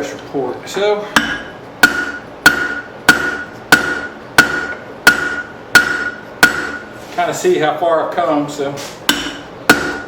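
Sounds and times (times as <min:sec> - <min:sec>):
hammer striking steel on anvil: 0:01.2 - 0:06.9, 0:09.0 - 0:10.0.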